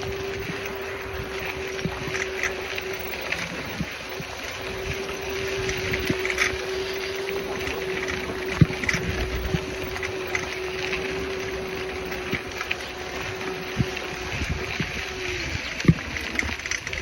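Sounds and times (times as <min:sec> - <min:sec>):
steady whine: 0:00.0 - 0:17.0
wind over microphone: 0:00.0 - 0:17.0.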